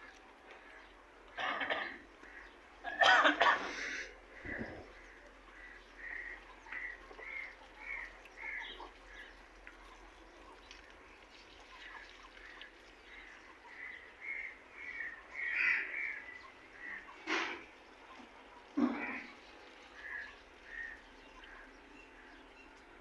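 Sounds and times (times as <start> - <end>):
faint outdoor background: 0.0 - 23.0.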